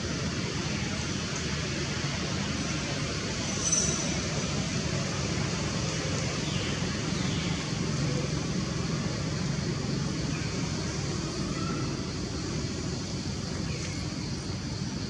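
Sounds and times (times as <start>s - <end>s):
low rumble with hiss: 0.0s - 15.0s.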